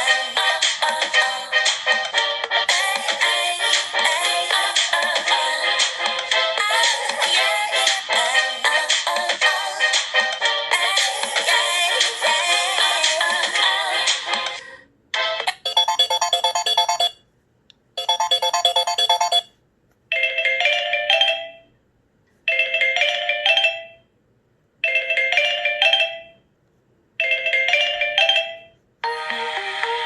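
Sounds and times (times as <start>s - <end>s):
phone ringtones: 15.4s - 17.2s, 18.0s - 19.5s.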